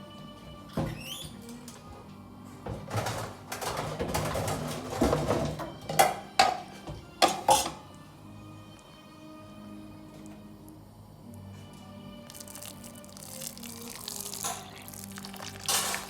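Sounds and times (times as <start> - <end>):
metal pot lid clattering: 7.2 - 7.8, 15.5 - 16.0.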